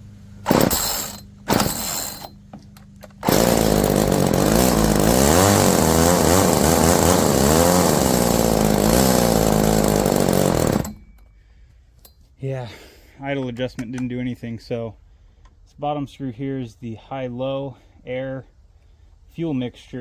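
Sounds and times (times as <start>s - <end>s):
two-stroke engine running: 0.0s - 11.2s
starter cord pull: 0.4s - 11.2s.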